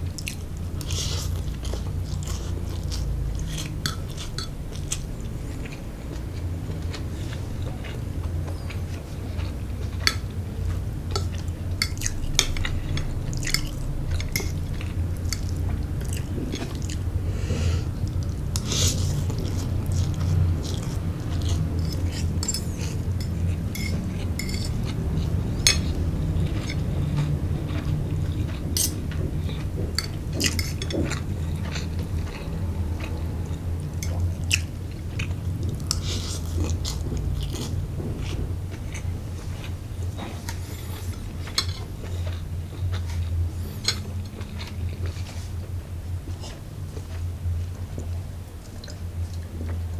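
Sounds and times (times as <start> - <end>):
low hum: 0.0 - 49.9
chewing and slurping: 0.1 - 49.9
cutlery clicking on plate: 21.8 - 24.8.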